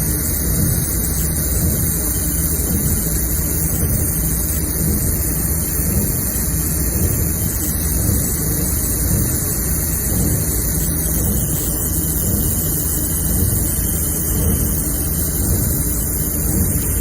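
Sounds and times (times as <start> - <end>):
machinery humming and hissing: 0.0 - 17.0.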